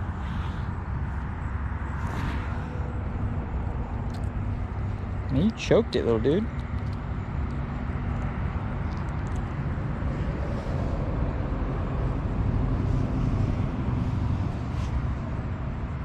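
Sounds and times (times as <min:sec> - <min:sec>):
vehicle engine rumble: 0:00.0 - 0:16.0.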